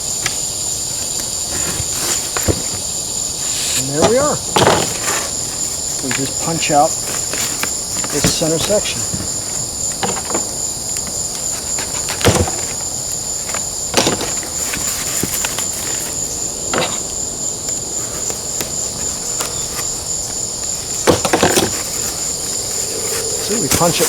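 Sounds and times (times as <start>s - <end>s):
crickets trilling: 0.0s - 24.0s
styrofoam knocking and creaking: 3.5s - 10.5s, 11.4s - 12.9s, 13.5s - 17.1s, 17.7s - 24.0s.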